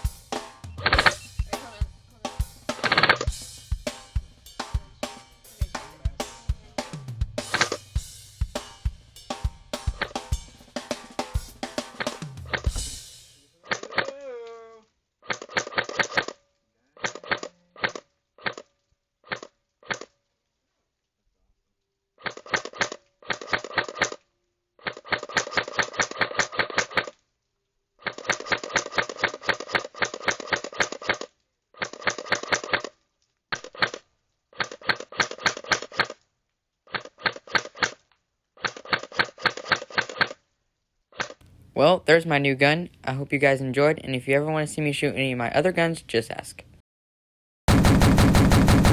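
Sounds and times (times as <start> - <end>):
airsoft rifle shots: 0.0 - 1.8, 2.7 - 3.4, 7.4 - 7.8, 9.9 - 10.2, 47.7 - 48.9.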